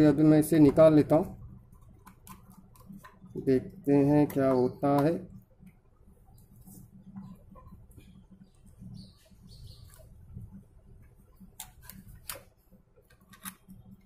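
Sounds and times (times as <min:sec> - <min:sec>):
plastic clicks and scraping: 0:01.8 - 0:03.3, 0:11.5 - 0:14.0.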